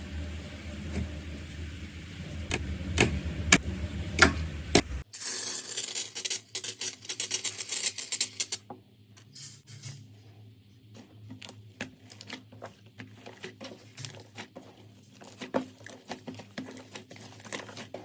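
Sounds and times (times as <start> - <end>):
low hum: 0.0 - 5.1.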